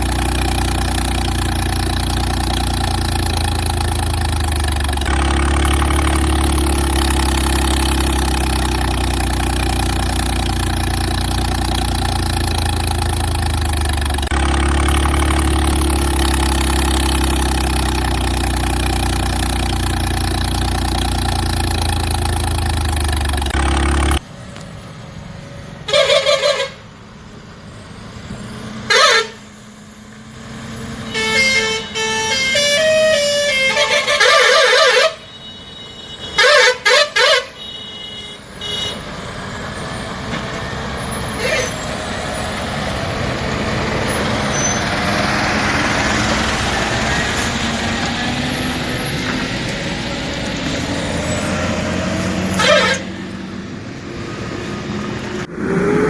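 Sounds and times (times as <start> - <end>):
toy horn toots: 25.9 - 26.8, 28.9 - 29.4, 31.1 - 39.1, 52.4 - 53.2.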